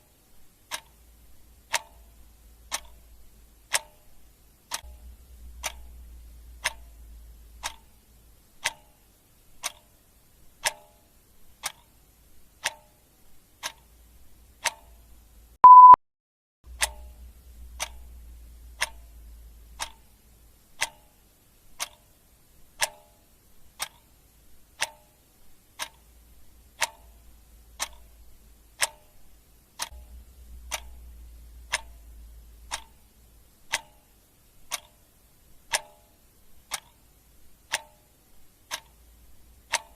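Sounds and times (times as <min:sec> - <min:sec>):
clock ticking: 0:00.0 - 0:16.0, 0:16.7 - 0:39.9
short high beep: 0:15.6 - 0:16.0.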